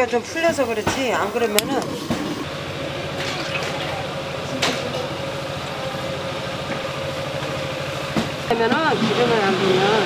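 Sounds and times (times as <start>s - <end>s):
steady machine hum: 0.0s - 10.0s.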